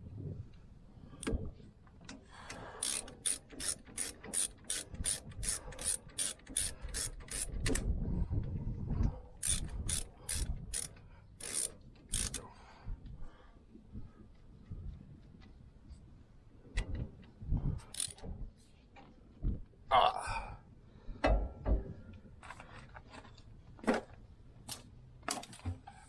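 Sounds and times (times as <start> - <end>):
ratchet wrench clicking: 2.8 - 7.8, 9.4 - 12.4, 17.9 - 18.2.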